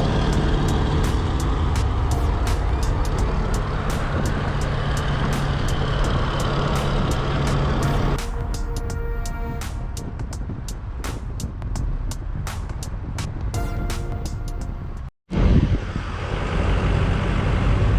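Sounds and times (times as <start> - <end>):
vehicle engine running: 0.0 - 8.2
road noise: 0.0 - 17.9.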